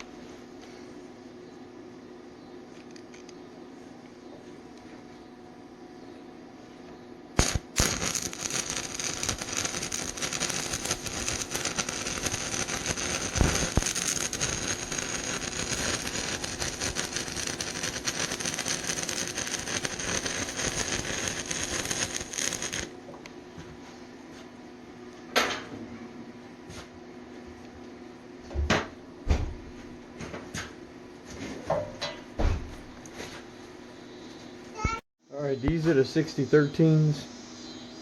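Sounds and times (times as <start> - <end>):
sharp snap of arc striking: 7.4 - 22.9
welding arc crackling and sizzling: 7.4 - 23.0.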